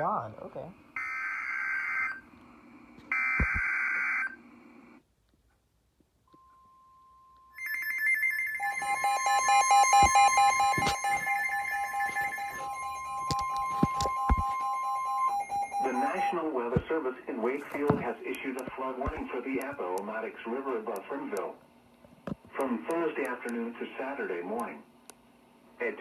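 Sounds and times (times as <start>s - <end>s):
electronic alarm pulsing tones: 3.1s - 3.9s, 6.3s - 16.4s
screeching digital header bursts: 7.6s - 16.3s
steady alert tone: 7.6s - 16.4s.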